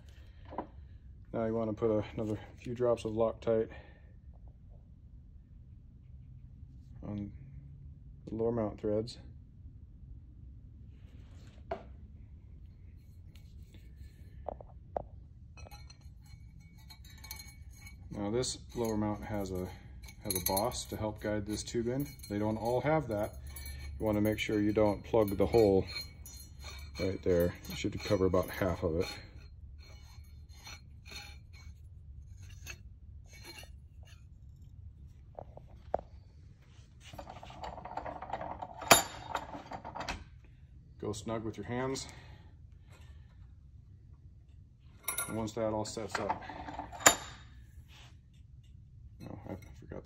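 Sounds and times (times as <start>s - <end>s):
steady low hum: 0.0s - 50.0s
metal parts scraping and clicking: 15.6s - 34.7s, 37.0s - 40.3s, 45.0s - 47.6s
metal parts tapping: 46.1s - 47.4s.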